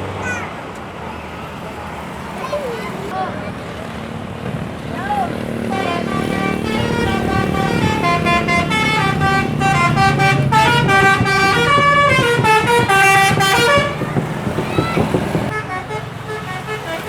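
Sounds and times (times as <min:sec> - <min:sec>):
bus engine humming: 0:00.0 - 0:17.0
musical air horn tune: 0:05.7 - 0:17.0.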